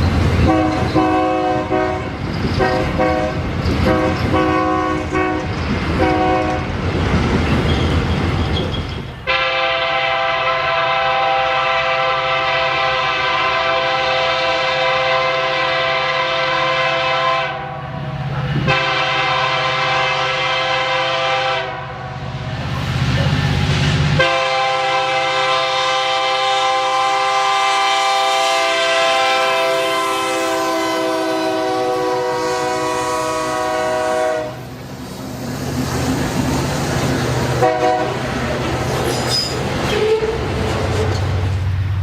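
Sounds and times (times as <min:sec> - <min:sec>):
train rumble: 0:00.0 - 0:42.0
train horn blasts: 0:00.4 - 0:06.7, 0:09.2 - 0:22.2, 0:24.2 - 0:34.7, 0:37.6 - 0:38.3.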